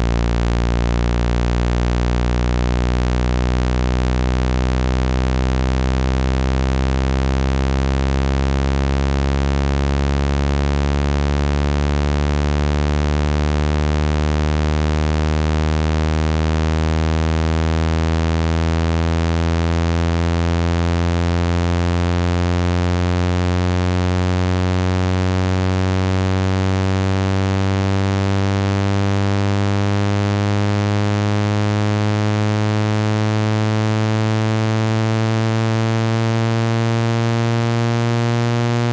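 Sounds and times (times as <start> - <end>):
low buzzy rising test tone: 22.8 - 38.9.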